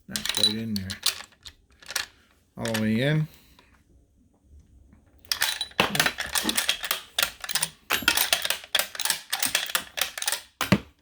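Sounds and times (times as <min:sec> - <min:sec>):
cartridges loaded into rifle: 0:00.1 - 0:03.1, 0:05.3 - 0:10.7.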